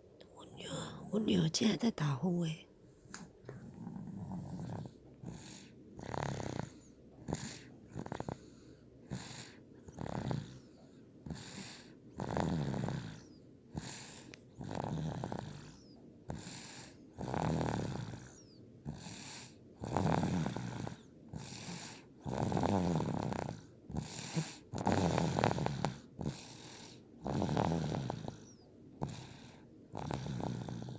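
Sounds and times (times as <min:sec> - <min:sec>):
soft breathing: 0:02.8 - 0:12.1, 0:13.1 - 0:17.2, 0:20.8 - 0:22.2, 0:25.6 - 0:27.1, 0:28.2 - 0:30.8
girl snoring: 0:03.7 - 0:08.4, 0:09.1 - 0:10.6, 0:11.3 - 0:13.2, 0:14.6 - 0:19.2, 0:19.8 - 0:26.5, 0:27.2 - 0:29.4, 0:30.0 - 0:30.9.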